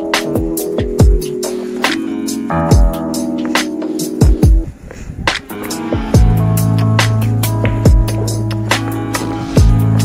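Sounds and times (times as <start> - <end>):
synth chords: 0.0 - 4.7, 5.4 - 10.0
drum hits and kick thumps: 2.7 - 3.0, 4.1 - 4.7, 6.2 - 8.4, 9.6 - 10.0.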